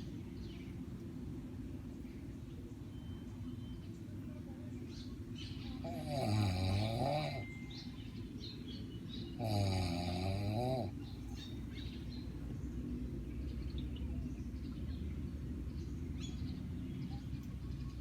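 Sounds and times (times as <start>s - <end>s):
woman snoring loudly: 5.8s - 7.5s, 9.4s - 11.0s.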